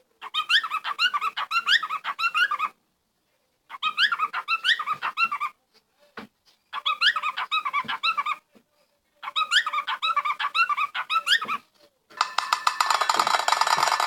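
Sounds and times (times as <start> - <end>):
animal yipping: 0.2 - 2.8, 3.7 - 5.6, 6.7 - 8.4, 9.2 - 11.6.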